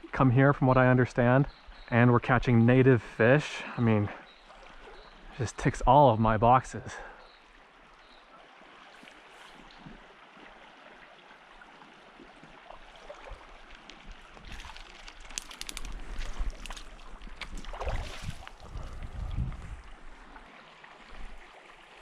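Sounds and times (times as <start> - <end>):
creek water flowing: 0.0 - 22.0
sharp clicks: 14.8 - 16.7
low wind rumble on microphone: 15.8 - 20.4.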